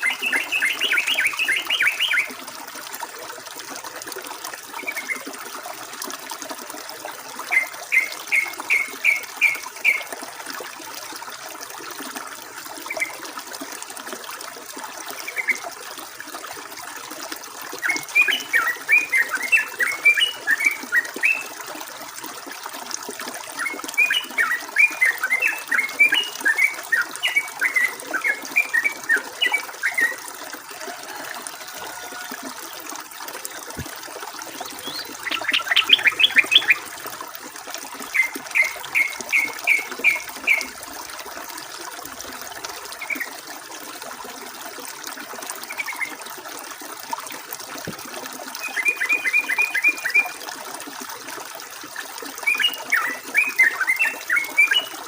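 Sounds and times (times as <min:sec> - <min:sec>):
bird chattering song: 0:00.0 - 0:02.3, 0:34.5 - 0:36.9
flowing water: 0:00.0 - 0:55.0.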